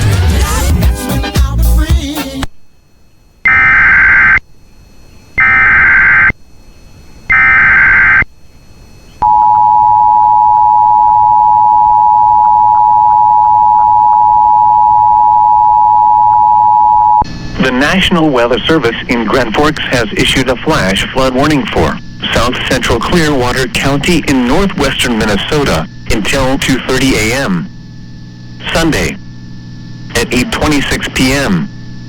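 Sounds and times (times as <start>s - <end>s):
digital data bursts: 5.4s - 6.3s, 7.3s - 8.2s, 17.6s - 27.7s, 28.6s - 29.2s, 30.1s - 31.7s.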